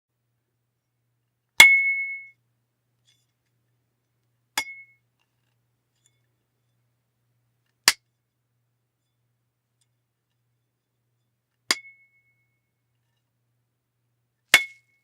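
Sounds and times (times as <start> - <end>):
metal bat ping: 1.6 - 2.4, 4.6 - 5.0, 11.7 - 12.1, 14.5 - 15.0.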